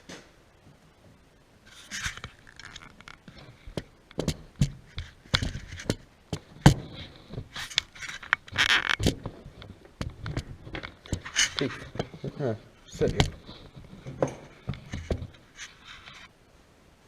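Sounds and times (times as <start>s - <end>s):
metal scraping: 6.6s - 16.3s
tools clicking and knocking: 13.0s - 15.4s.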